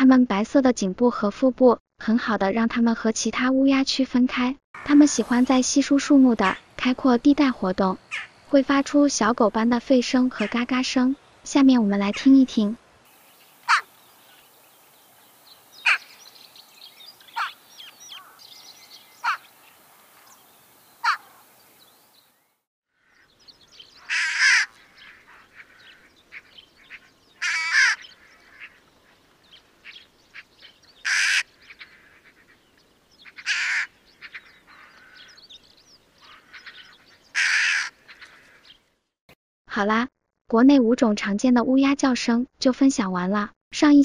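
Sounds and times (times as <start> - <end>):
jackdaws calling: 8.0 - 8.5, 13.1 - 39.0
jackdaws chattering: 13.1 - 14.8, 15.6 - 20.4, 21.0 - 21.8, 23.5 - 38.6.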